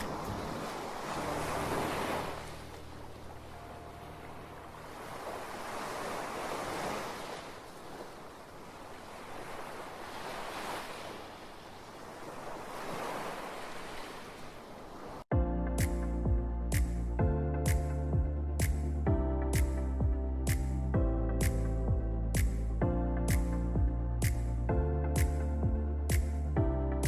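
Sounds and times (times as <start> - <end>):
sea waves breaking on a beach: 0.0 - 15.3.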